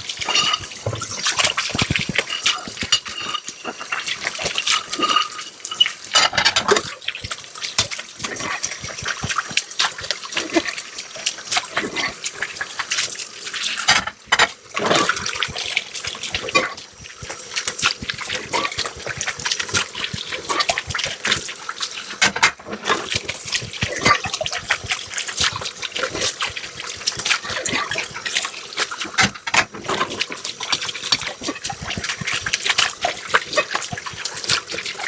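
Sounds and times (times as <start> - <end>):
running water: 0.0 - 35.0
dishes clinking: 0.1 - 6.9, 13.8 - 14.6.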